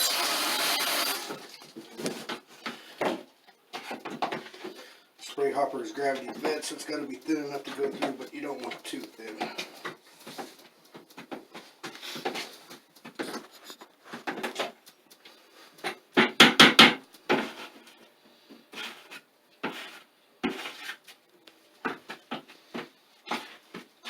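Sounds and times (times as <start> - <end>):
texture stirred in a bucket: 0.0 - 2.4, 5.4 - 13.6, 18.7 - 21.2.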